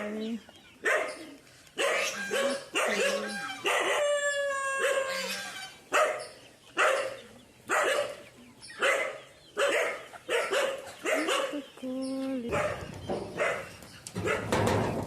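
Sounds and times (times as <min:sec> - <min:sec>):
dog barking: 0:00.8 - 0:04.2, 0:04.8 - 0:05.3, 0:05.9 - 0:11.6, 0:12.5 - 0:14.6.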